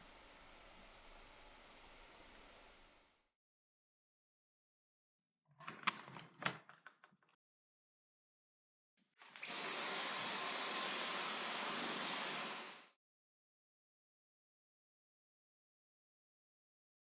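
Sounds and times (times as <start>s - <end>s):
vacuum cleaner running: 0.0s - 3.1s, 9.3s - 13.0s
clicks and knocks: 5.6s - 7.4s.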